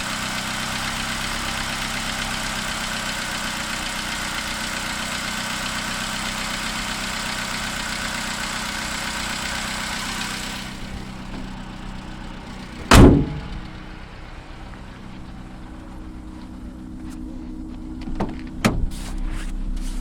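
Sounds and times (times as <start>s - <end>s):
engine idling: 0.0s - 20.0s
loud thump: 12.8s - 13.8s, 18.2s - 19.0s.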